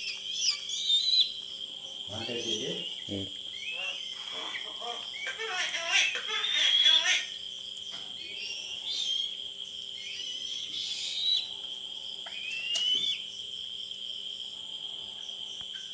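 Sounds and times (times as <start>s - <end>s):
crickets chirring: 0.0s - 15.9s
short whistled calls: 10.0s - 11.5s, 12.3s - 13.3s.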